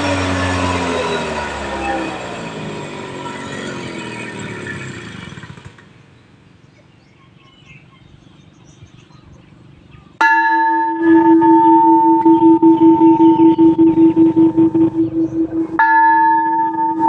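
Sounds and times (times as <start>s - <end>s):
machine noise: 0.0s - 5.7s, 10.8s - 17.0s
large bell ringing: 10.2s - 17.0s.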